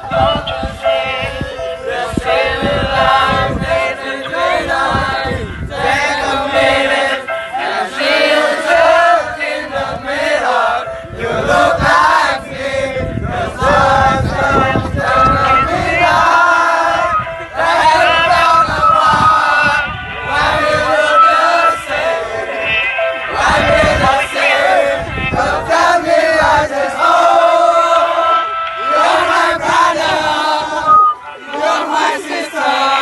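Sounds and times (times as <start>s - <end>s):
voices singing over a beat: 0.0s - 33.0s.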